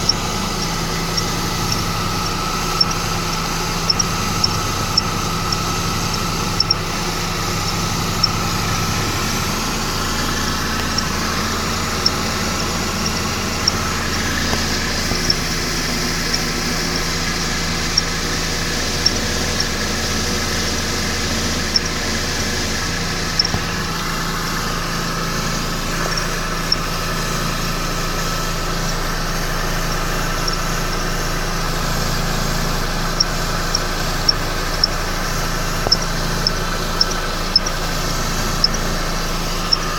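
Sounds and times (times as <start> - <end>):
high-pitched belt chirp: 0.0 - 17.2, 23.2 - 24.2
car engine idling: 0.0 - 39.9.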